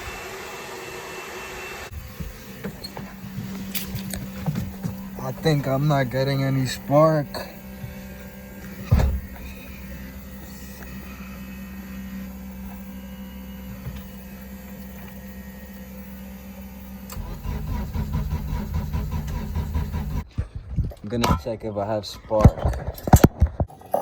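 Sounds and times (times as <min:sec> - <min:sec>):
steady electric hum: 0:00.0 - 0:23.6
starter cranking engine: 0:02.0 - 0:11.4, 0:17.1 - 0:21.2.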